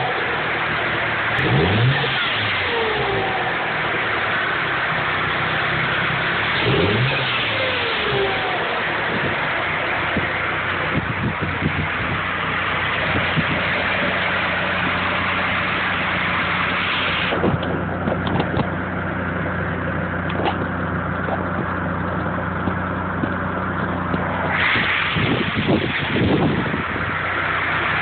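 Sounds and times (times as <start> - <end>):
loud turbo hissing: 0.0 - 18.0, 24.0 - 28.0
car engine idling: 0.0 - 28.0.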